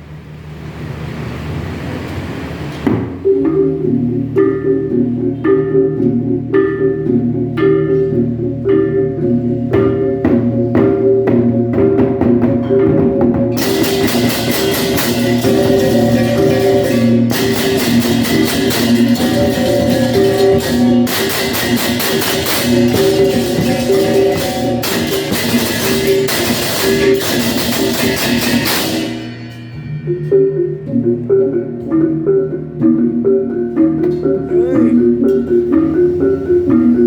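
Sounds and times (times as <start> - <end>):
gongs ringing: 3.1 - 37.0
crashing cymbals: 13.5 - 30.3.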